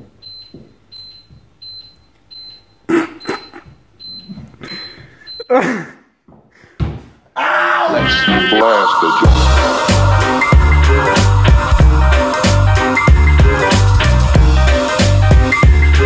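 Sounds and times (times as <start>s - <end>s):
high electronic beeps: 0.2s - 5.5s
falling voice-like sound: 7.4s - 9.8s
loud music: 7.6s - 16.0s.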